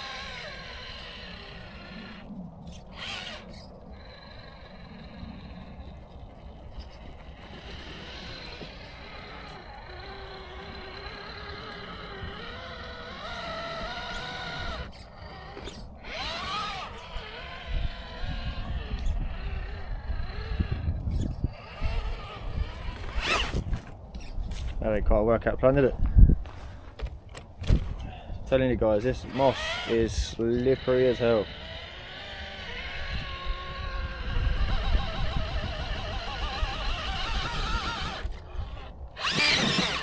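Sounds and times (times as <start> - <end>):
electric motor and gears whining: 0.0 - 24.8, 28.5 - 40.0.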